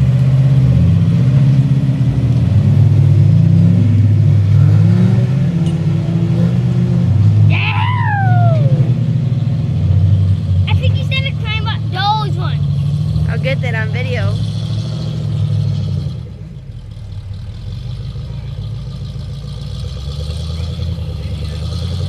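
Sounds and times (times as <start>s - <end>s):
off-road vehicle engine revving: 0.0s - 22.0s
high downward gliding sound: 7.4s - 9.1s.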